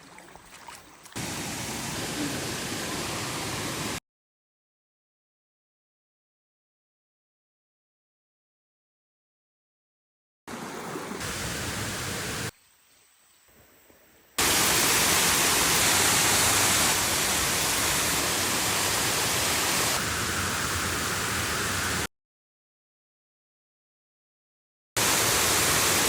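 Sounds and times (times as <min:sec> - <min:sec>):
waterfall roaring: 0:01.2 - 0:04.0, 0:10.5 - 0:12.5, 0:14.4 - 0:22.1, 0:25.0 - 0:26.0.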